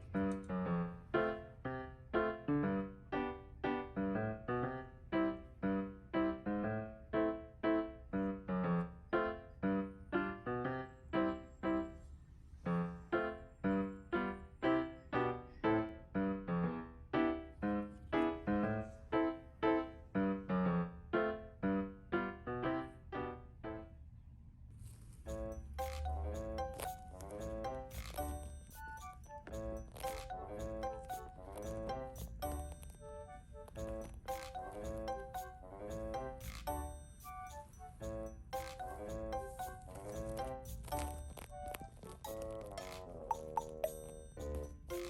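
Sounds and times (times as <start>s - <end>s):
light keyboard tune: 0.0s - 12.0s, 25.3s - 45.0s.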